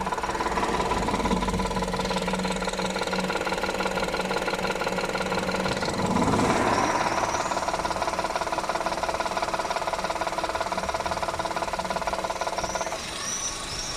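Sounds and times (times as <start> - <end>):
car engine knocking: 0.0 - 13.1.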